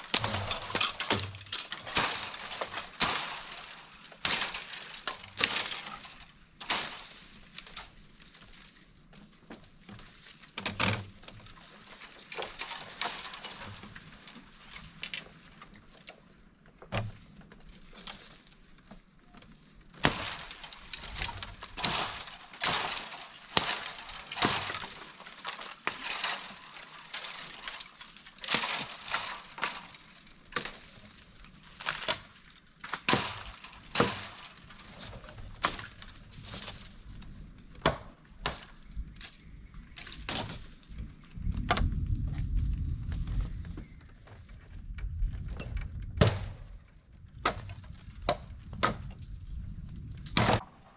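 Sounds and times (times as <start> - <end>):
knocks and snaps of wood work: 37.8 - 39.3, 50.2 - 50.7.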